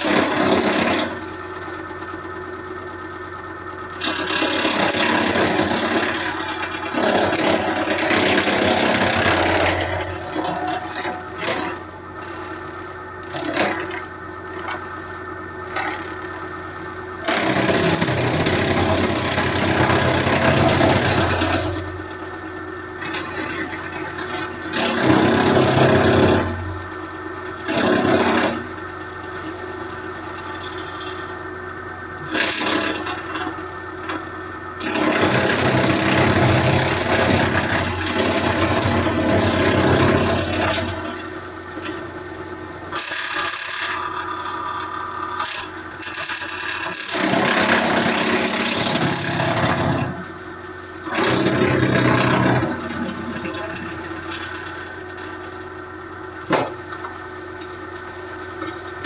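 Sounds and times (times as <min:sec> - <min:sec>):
wood chipping and rattling: 0:00.0 - 0:02.1, 0:04.0 - 0:12.6, 0:17.2 - 0:21.8, 0:23.0 - 0:26.7, 0:27.7 - 0:28.7, 0:29.3 - 0:31.4, 0:32.2 - 0:34.2, 0:34.8 - 0:42.1, 0:51.0 - 0:55.6
wood chipper engine running: 0:00.0 - 0:59.0.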